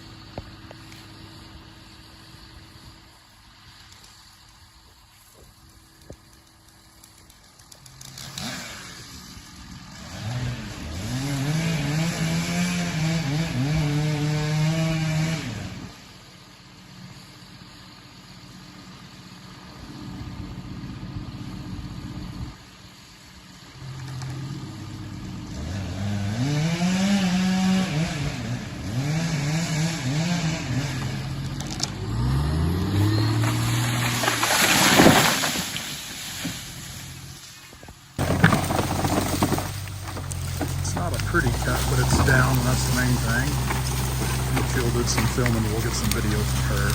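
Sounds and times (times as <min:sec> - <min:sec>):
engine revving: 0:07.5 - 0:16.2, 0:23.6 - 0:46.9.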